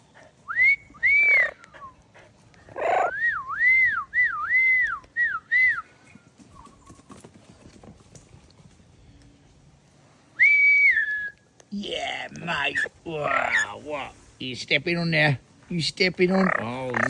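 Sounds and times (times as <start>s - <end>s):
parrot whistling: 0.5s - 1.9s, 2.8s - 5.8s, 12.6s - 13.7s.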